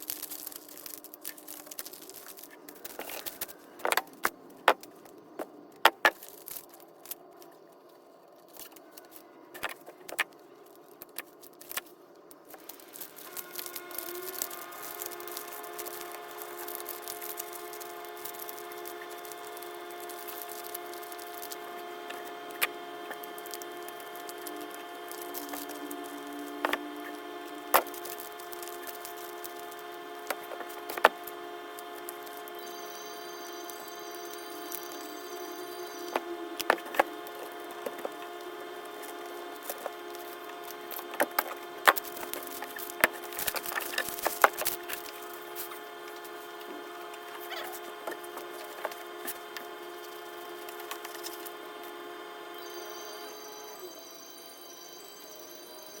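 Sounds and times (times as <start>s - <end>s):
wrappers crinkling and rustling: 0.0s - 54.1s
steady hum of held tones: 0.0s - 56.0s.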